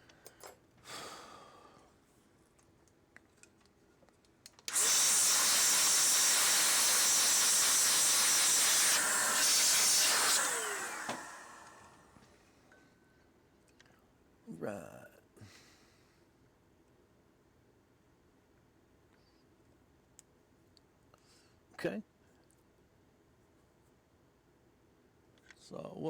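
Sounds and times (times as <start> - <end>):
air blower hissing: 4.7 - 12.2.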